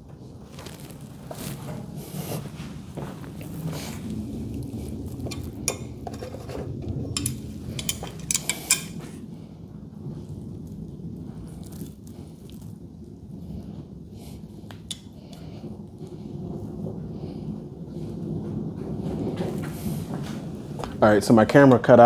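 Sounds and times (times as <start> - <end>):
low background noise: 0.0 - 22.0
metal tools clinking: 5.1 - 9.2.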